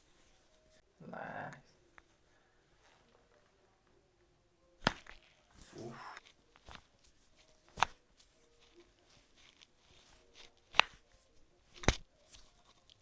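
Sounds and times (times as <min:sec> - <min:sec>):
sharp chiropractic cracks: 0:04.8 - 0:13.0.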